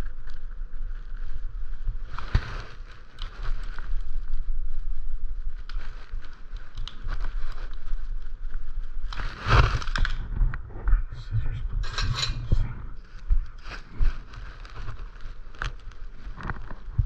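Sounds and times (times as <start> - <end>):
low rumble: 0.0 - 17.0
handling clicks and rustling: 5.6 - 8.0.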